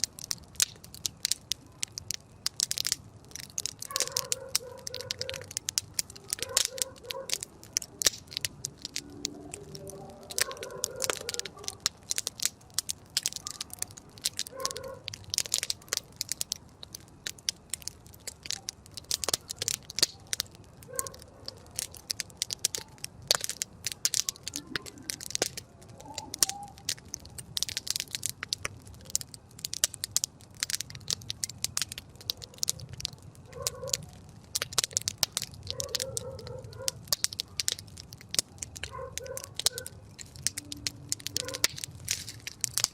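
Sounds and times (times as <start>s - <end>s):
campfire crackling and popping: 0.0s - 42.9s.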